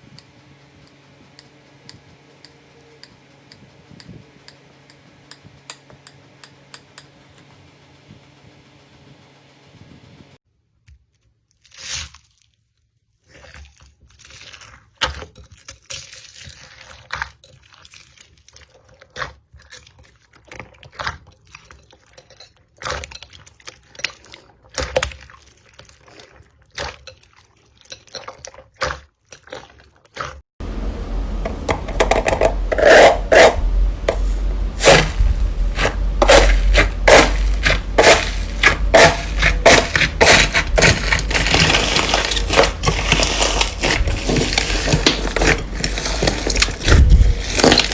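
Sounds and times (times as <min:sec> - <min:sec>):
loud crackling and crunching: 0:31.8 - 0:47.9
slime clicking and crackling: 0:36.3 - 0:47.9.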